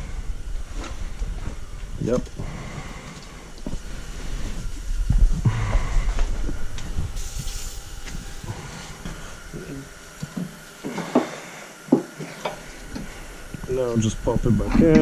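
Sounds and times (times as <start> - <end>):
aerosol can spraying: 7.2 - 9.4.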